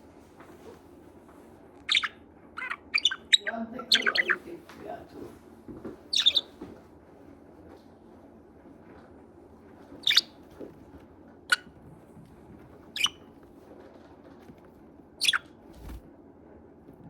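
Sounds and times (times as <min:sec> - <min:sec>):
budgerigar chirps: 0:01.9 - 0:04.4, 0:06.1 - 0:06.5, 0:10.0 - 0:10.4, 0:13.0 - 0:13.2, 0:15.2 - 0:15.5.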